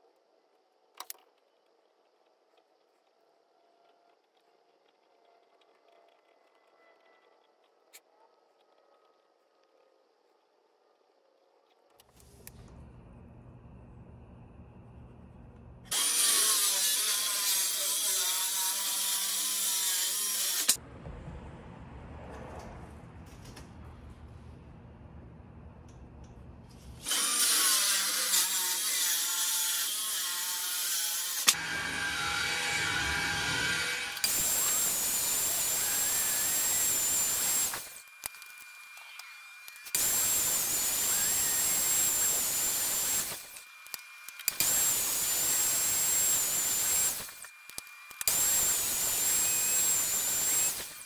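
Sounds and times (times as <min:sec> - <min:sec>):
power tool cutting wood: 0:15.9 - 0:20.8, 0:27.0 - 0:38.1, 0:38.9 - 0:51.0.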